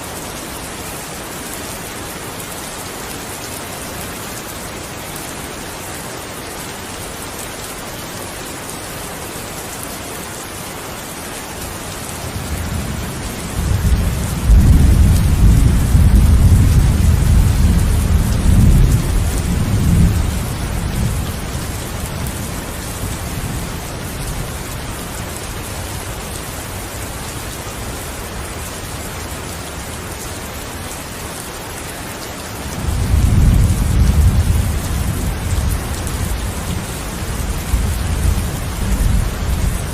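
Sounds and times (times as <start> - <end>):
steady rain hiss: 0.0 - 39.9
rolling thunder rumble: 12.3 - 25.2, 32.8 - 39.9.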